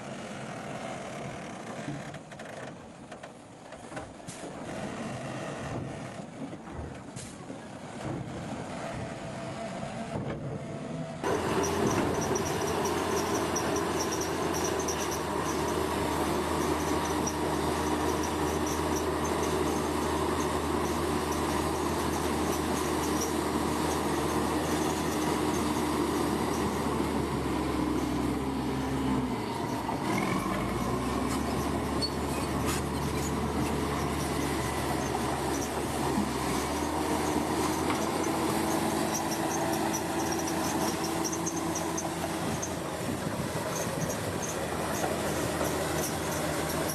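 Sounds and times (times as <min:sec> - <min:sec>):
bulldozer diesel engine running: 0:07.5 - 0:46.9
high metallic squeal: 0:11.2 - 0:42.9, 0:43.6 - 0:46.9.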